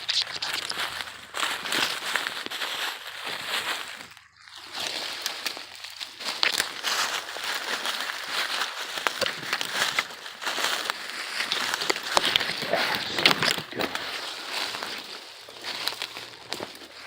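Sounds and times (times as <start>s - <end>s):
footsteps through brush: 0.0s - 17.0s
branches and dry leaves rustling: 0.1s - 17.0s
twigs snapping: 4.7s - 17.0s.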